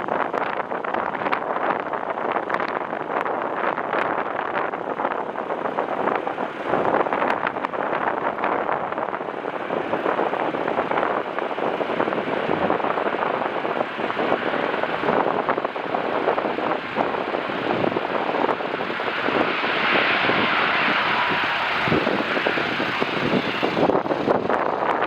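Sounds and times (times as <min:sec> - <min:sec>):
jet airliner engine: 0:00.0 - 0:25.0
wind buffeting microphone: 0:00.0 - 0:25.0
higher rushing sound: 0:14.1 - 0:24.6.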